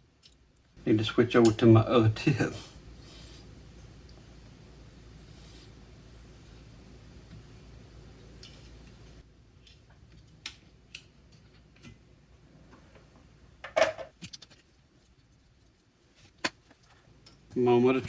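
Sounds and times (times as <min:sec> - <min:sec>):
low steady hum: 0:00.0 - 0:14.1.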